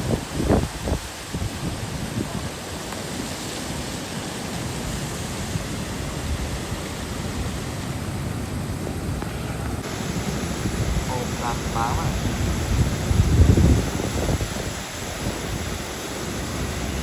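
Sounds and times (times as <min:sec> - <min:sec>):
rushing noise with low rumble: 0:04.6 - 0:17.0.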